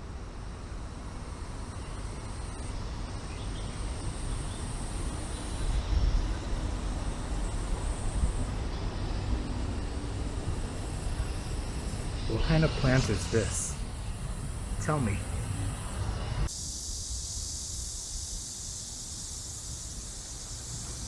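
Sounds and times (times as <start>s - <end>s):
faint high hiss: 5.3s - 21.0s.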